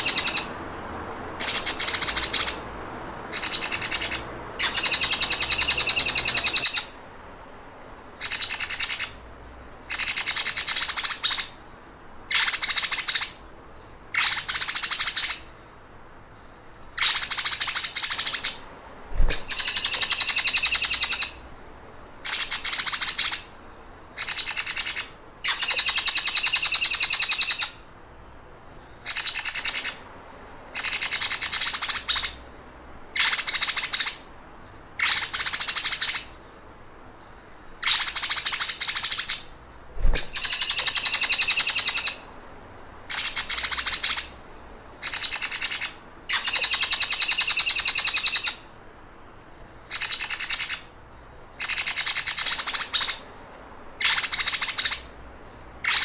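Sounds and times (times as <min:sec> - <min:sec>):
songbird buzzy trill: 0:00.0 - 0:07.1, 0:28.7 - 0:48.7
low thump: 0:40.0 - 0:40.4.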